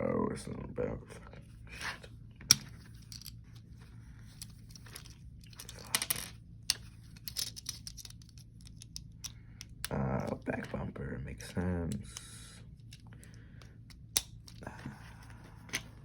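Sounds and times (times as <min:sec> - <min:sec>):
plastic pieces clicking and clattering: 0:02.4 - 0:03.4, 0:04.2 - 0:10.5, 0:12.8 - 0:14.7.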